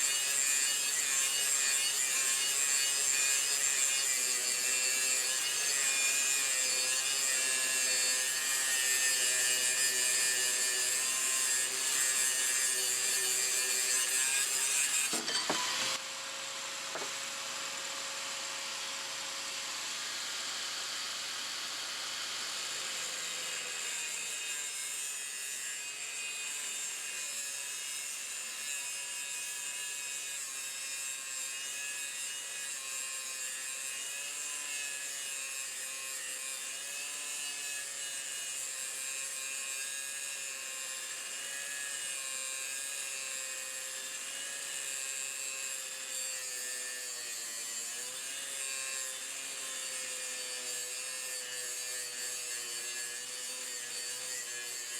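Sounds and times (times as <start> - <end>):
electric chainsaw cutting wood: 0.0 - 54.9.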